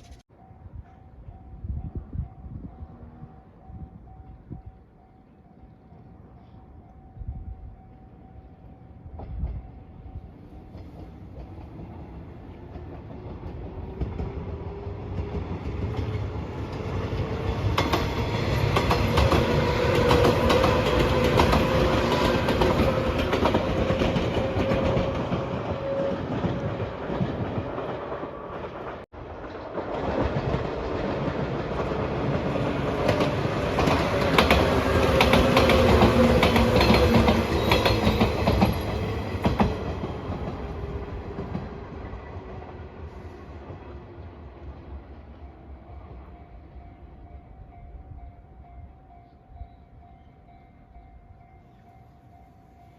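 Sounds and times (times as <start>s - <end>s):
train running gear hum: 0.0s - 52.9s
train wheels clacking: 9.1s - 43.9s.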